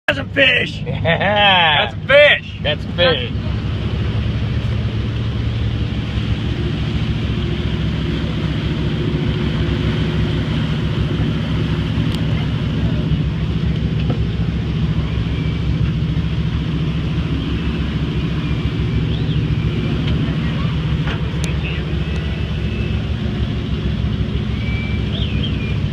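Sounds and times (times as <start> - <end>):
boat engine humming: 0.1 - 25.9.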